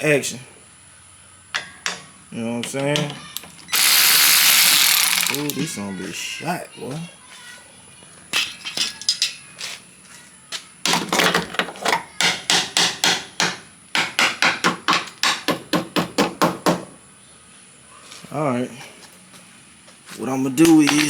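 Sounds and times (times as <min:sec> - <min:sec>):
hammer striking metal hinge: 0:12.2 - 0:16.9.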